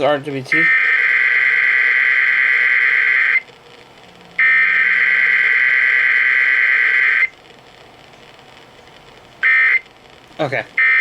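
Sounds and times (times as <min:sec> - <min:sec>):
data tone bursts: 0:00.5 - 0:03.4.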